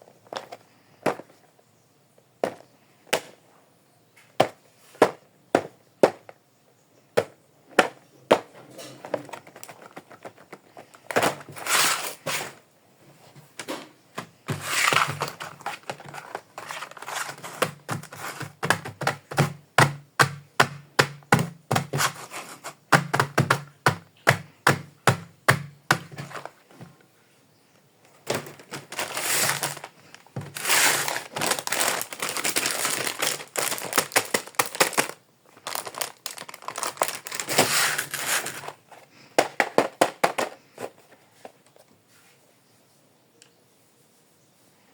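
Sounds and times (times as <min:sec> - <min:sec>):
plastic packaging crinkling: 0:09.0 - 0:12.6, 0:13.6 - 0:19.6, 0:21.0 - 0:24.0, 0:25.9 - 0:26.8, 0:28.0 - 0:40.6
plastic toy pieces clicking: 0:30.6 - 0:38.7.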